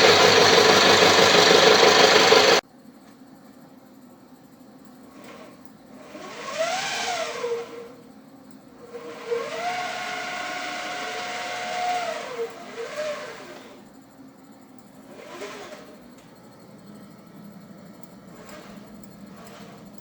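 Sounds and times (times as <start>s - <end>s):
electric motor whining: 0.0s - 2.6s, 5.2s - 8.0s, 8.8s - 13.9s
constant low hum: 16.0s - 20.0s.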